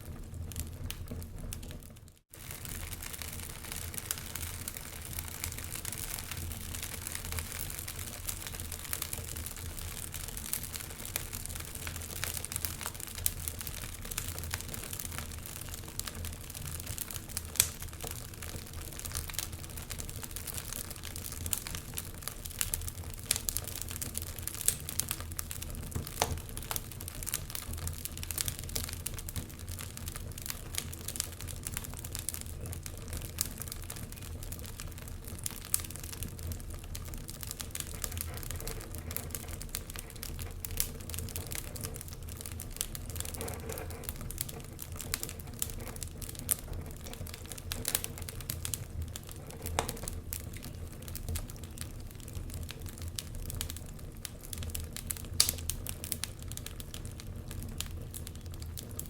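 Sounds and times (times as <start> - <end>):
wood fire crackling and popping: 0.0 - 59.0.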